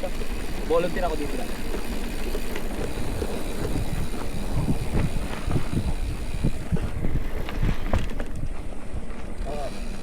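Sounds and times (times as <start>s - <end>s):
mountain bike rattling and knocking: 0.0s - 10.0s
wind on microphone: 2.6s - 10.0s.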